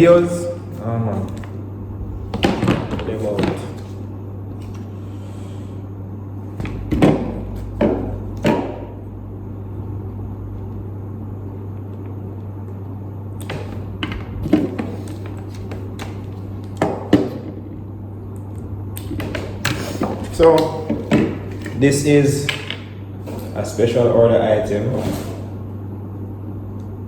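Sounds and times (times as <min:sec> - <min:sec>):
steady low hum: 0:00.0 - 0:27.0
sharp clunks and knocks: 0:06.6 - 0:08.9.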